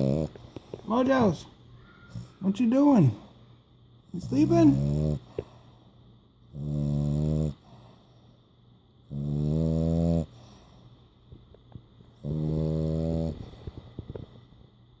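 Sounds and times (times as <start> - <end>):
dog snoring: 0.0 - 1.3, 4.2 - 5.7, 6.5 - 8.2, 9.1 - 10.8, 12.2 - 14.2.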